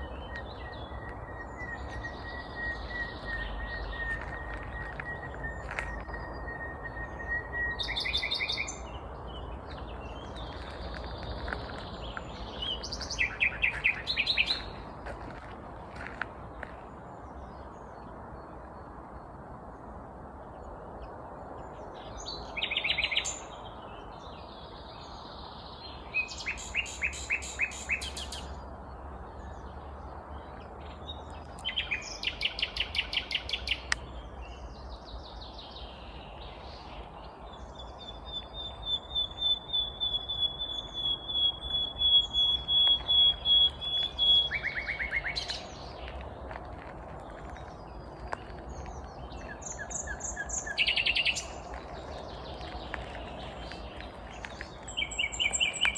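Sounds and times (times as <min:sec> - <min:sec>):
nightingale singing: 0:00.0 - 0:14.8, 0:24.4 - 0:28.6, 0:30.9 - 0:46.2, 0:47.8 - 0:55.9
low background noise: 0:00.0 - 0:55.9.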